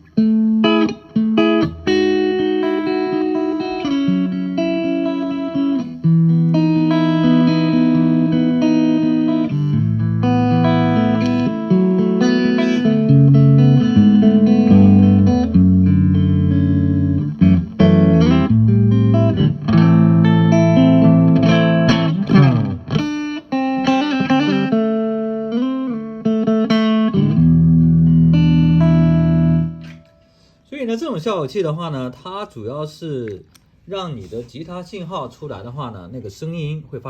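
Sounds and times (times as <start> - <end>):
clean electric guitar: 0.0 - 30.6.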